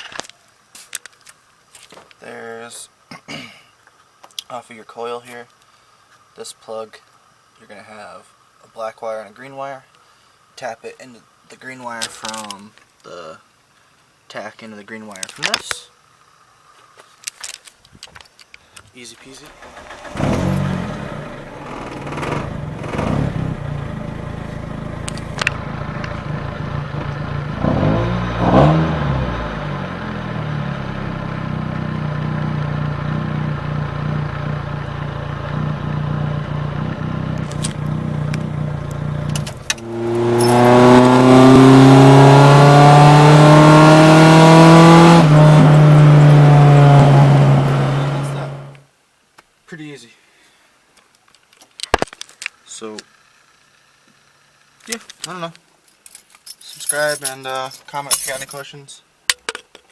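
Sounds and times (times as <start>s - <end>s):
car engine revving: 19.4s - 48.8s.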